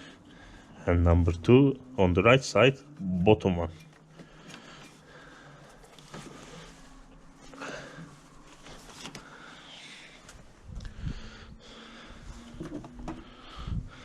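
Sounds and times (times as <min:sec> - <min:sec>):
soft handling rustles and clicks: 0:03.7 - 0:11.0.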